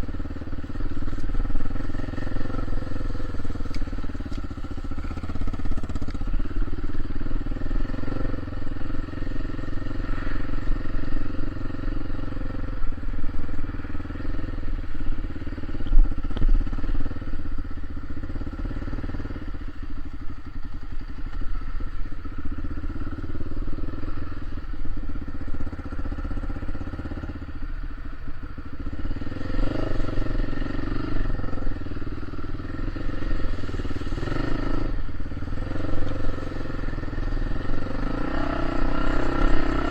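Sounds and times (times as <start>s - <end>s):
vehicle engine droning: 0.0s - 39.9s.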